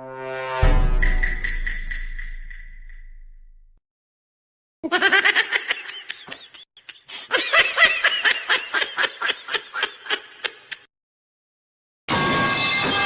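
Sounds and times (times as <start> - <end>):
high-pitched rapid giggling: 4.8 - 10.9.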